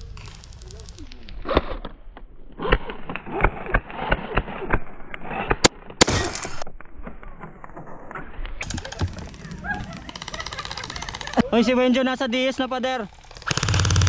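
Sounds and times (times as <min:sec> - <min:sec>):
loud sharp crack: 0:00.0 - 0:11.7, 0:13.0 - 0:14.0
irregular clicks and knocks: 0:07.7 - 0:11.5.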